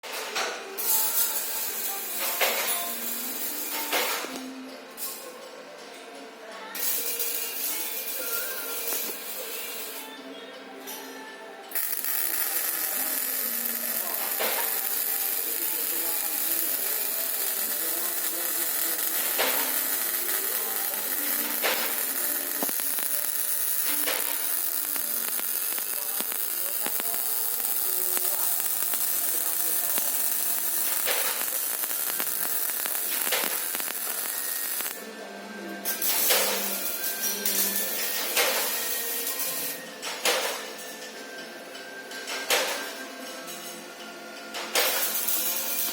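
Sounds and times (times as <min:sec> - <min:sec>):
background music: 0:00.0 - 0:45.9
welding arc crackling: 0:00.8 - 0:04.4, 0:06.8 - 0:10.0, 0:11.7 - 0:35.0, 0:35.9 - 0:40.6, 0:44.7 - 0:45.9.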